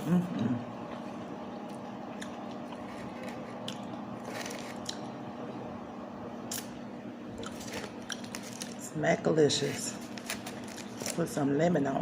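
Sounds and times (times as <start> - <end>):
person chewing: 0.8 - 5.2, 7.3 - 8.8.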